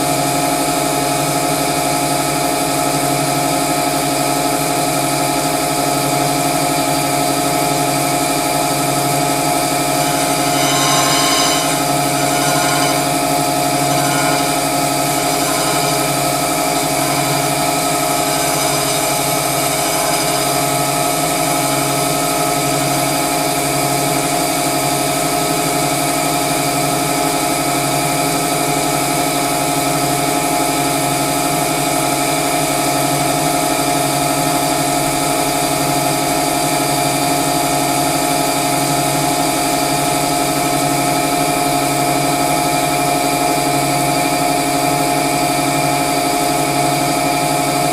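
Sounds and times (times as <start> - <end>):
crankshaft grinder humming: 9.6 - 23.2.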